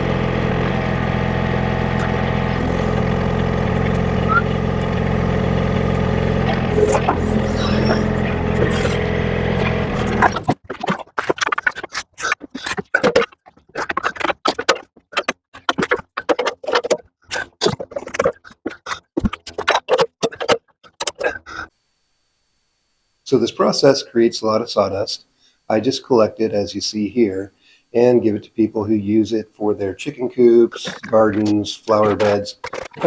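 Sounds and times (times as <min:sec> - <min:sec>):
diesel excavator engine running: 0:00.0 - 0:10.6.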